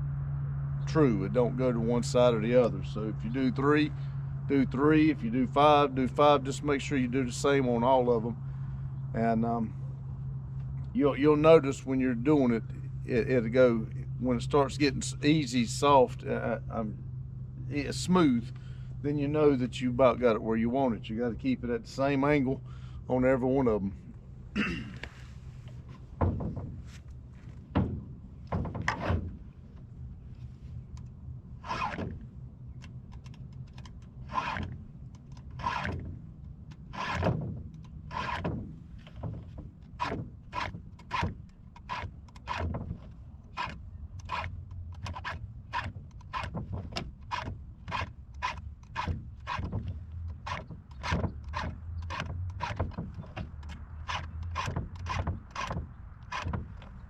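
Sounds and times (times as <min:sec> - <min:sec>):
faint low hum: 0:00.0 - 0:46.3
file rasping on chainsaw chain: 0:34.2 - 0:34.7, 0:35.4 - 0:36.0, 0:36.9 - 0:37.3, 0:38.1 - 0:38.4, 0:43.5 - 0:46.5, 0:50.3 - 0:56.6.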